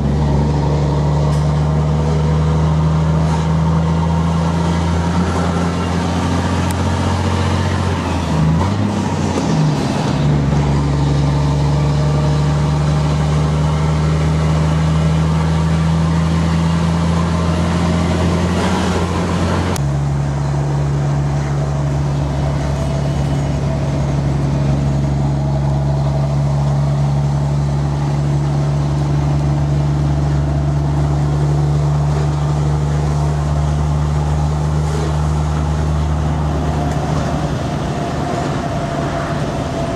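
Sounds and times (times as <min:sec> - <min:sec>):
truck diesel engine drone: 0:00.0 - 0:39.9.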